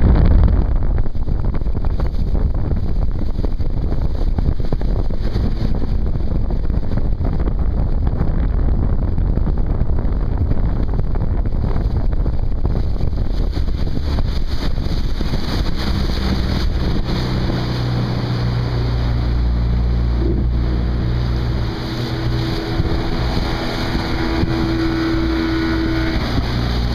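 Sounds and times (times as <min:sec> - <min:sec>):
motorboat engine drone: 0:00.0 - 0:26.9
wind buffeting microphone: 0:00.0 - 0:26.9
water rushing: 0:01.5 - 0:07.1, 0:13.0 - 0:26.9.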